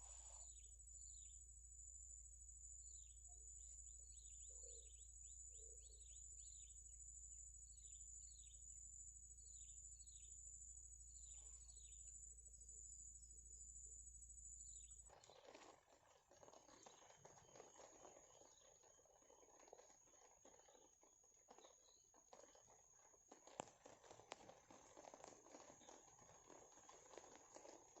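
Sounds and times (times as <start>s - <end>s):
crackling and rustling: 15.0s - 28.0s.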